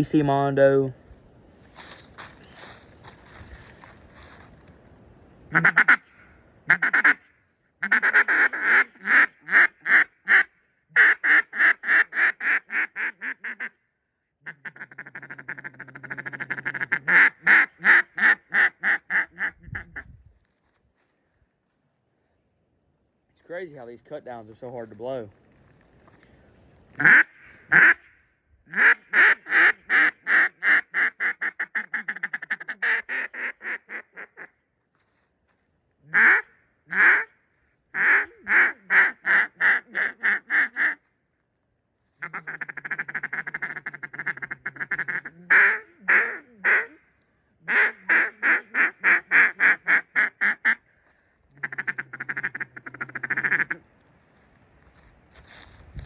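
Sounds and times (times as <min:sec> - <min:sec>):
duck call fast chatter: 0:05.5 - 0:06.1, 0:06.7 - 0:07.2, 0:07.8 - 0:13.7, 0:14.4 - 0:20.0, 0:27.0 - 0:28.0, 0:28.7 - 0:34.5, 0:36.1 - 0:37.3, 0:38.0 - 0:41.0, 0:42.2 - 0:47.0, 0:47.7 - 0:50.8, 0:51.6 - 0:53.8
duck call quacks: 0:05.5 - 0:13.8, 0:14.4 - 0:20.1, 0:27.0 - 0:28.1, 0:28.7 - 0:34.6, 0:36.0 - 0:41.0, 0:42.2 - 0:47.0, 0:47.6 - 0:50.8, 0:51.6 - 0:53.9.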